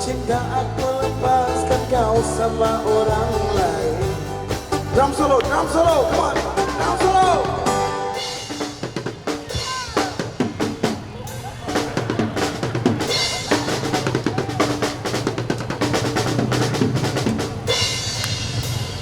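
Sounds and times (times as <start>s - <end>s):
drum kit solo: 0.0s - 19.0s.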